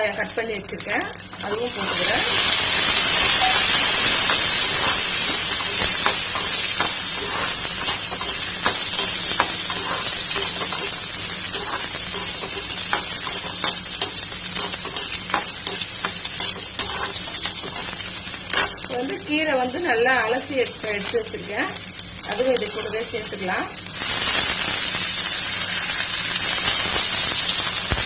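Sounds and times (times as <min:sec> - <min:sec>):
onions sizzling in hot oil: 0:00.0 - 0:28.0
oil crackling: 0:01.5 - 0:19.1.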